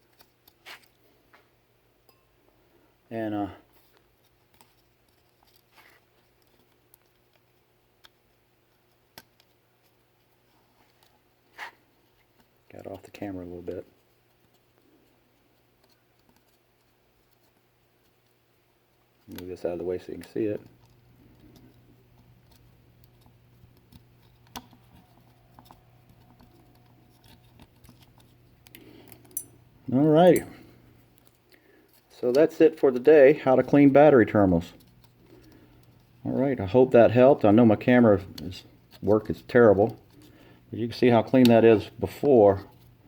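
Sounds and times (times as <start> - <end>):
small objects clicking and tapping: 19.3 - 29.6.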